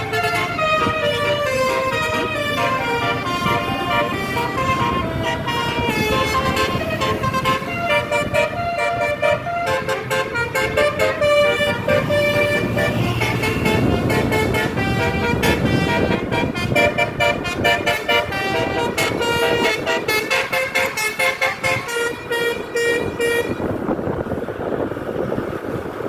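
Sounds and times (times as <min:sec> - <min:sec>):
multi-tone bus horns playing melody: 0:00.0 - 0:24.0.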